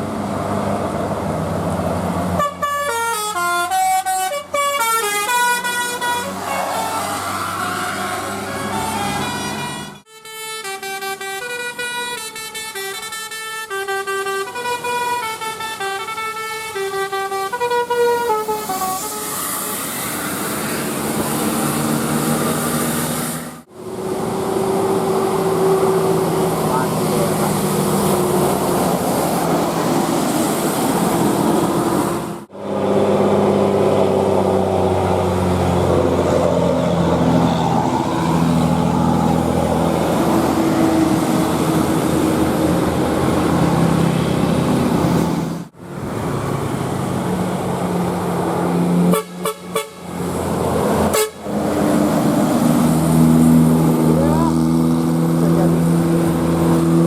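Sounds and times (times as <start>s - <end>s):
multi-tone musical air horns: 2.4s - 20.2s, 49.1s - 50.1s, 51.1s - 51.4s.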